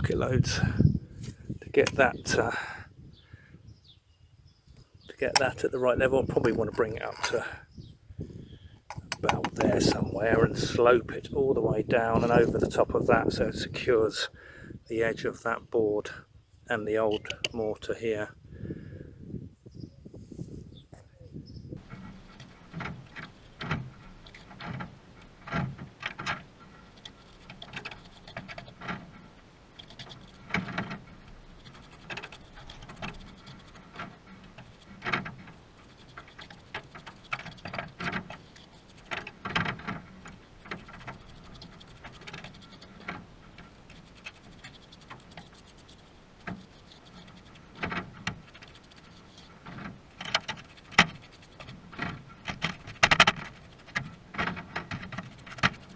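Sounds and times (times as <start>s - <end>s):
trowel scraping and knocking mortar: 1.2s - 2.6s, 5.2s - 7.6s, 8.9s - 10.1s.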